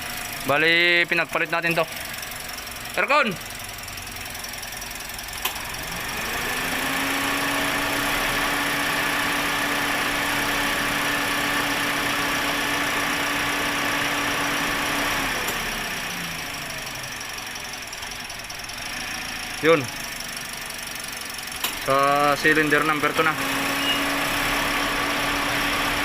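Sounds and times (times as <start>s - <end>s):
engine idling roughly: 0.0s - 26.0s.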